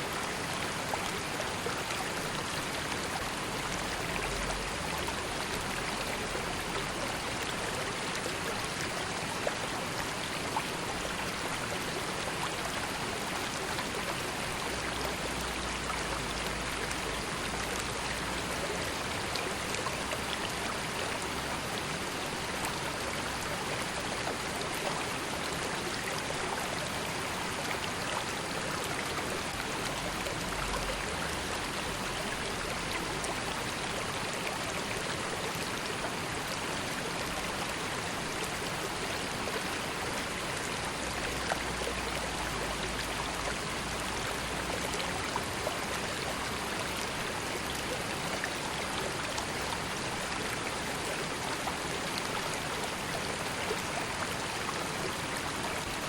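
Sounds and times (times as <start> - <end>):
river flowing: 0.0 - 56.0
water trickling and splashing: 0.0 - 56.0.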